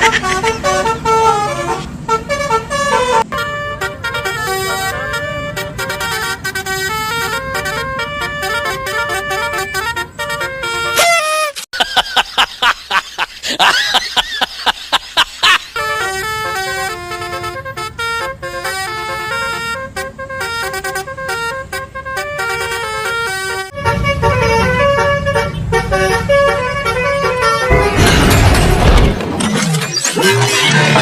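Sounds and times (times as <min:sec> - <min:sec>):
multi-tone bus horn tune: 0:00.0 - 0:11.6, 0:15.7 - 0:28.0
low rumble: 0:27.7 - 0:29.4.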